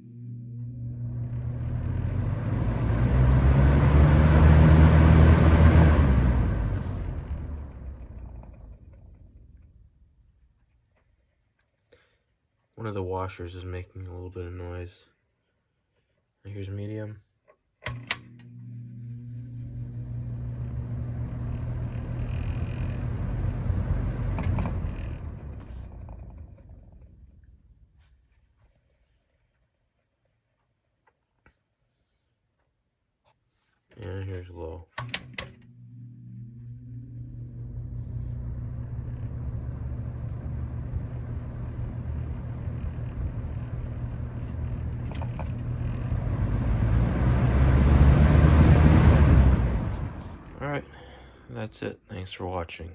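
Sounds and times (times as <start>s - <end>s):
box fan motor hum: 0.0s - 10.1s, 17.8s - 27.6s, 35.0s - 50.8s
fan clicks: 17.8s - 18.5s, 20.2s - 27.5s, 34.9s - 35.7s, 38.4s - 46.2s.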